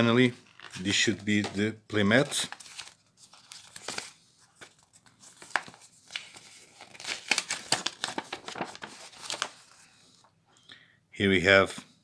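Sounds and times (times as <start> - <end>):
playmat crinkling and rustling: 2.2 - 9.9.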